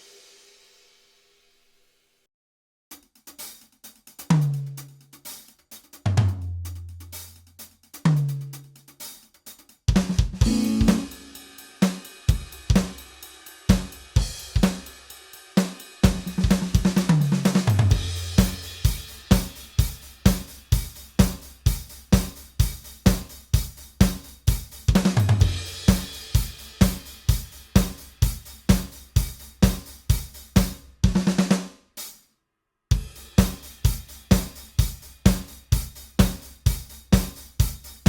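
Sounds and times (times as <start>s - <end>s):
drum kit beat: 2.9s - 32.2s, 32.9s - 38.0s
tom fills: 10.4s - 11.4s
cymbal crash: 10.4s - 11.8s.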